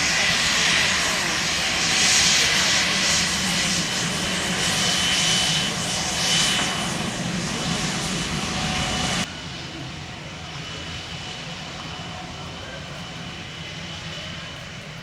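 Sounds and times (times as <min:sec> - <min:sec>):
jet engines running: 0:00.0 - 0:09.7.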